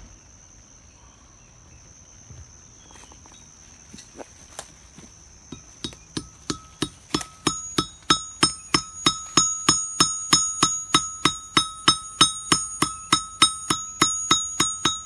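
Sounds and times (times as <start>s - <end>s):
hammer blows on metal: 5.5s - 15.0s.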